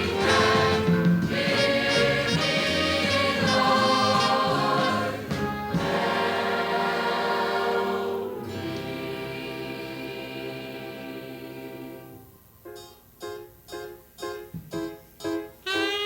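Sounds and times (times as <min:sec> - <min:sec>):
choir singing gospel: 0:00.0 - 0:12.3.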